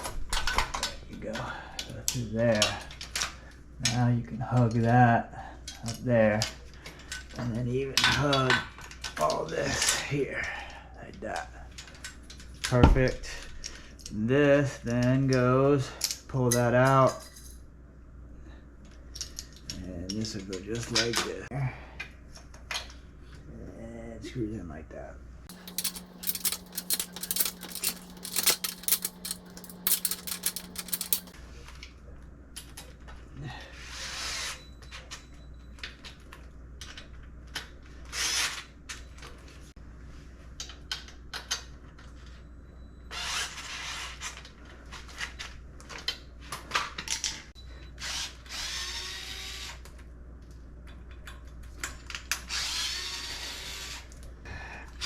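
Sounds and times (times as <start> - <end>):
clatter of parts and tools: 16.0 - 17.7, 25.5 - 31.4
power drill driving screws: 25.5 - 31.3, 48.0 - 49.8, 52.5 - 54.0.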